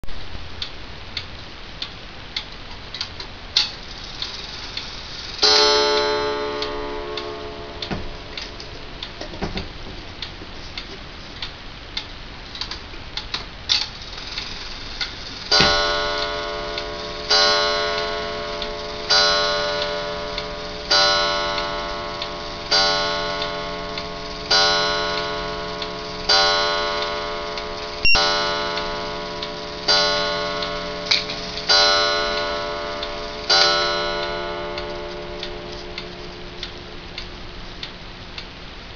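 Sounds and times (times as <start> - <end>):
wall clock ticking: 0.6 - 38.9
clock chime strikes: 5.4 - 9.2, 15.5 - 37.6.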